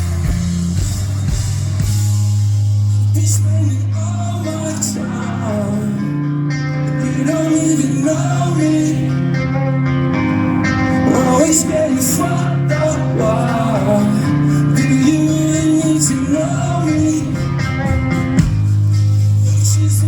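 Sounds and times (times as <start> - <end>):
rock band playing live: 0.0 - 20.0
person singing: 3.2 - 18.4.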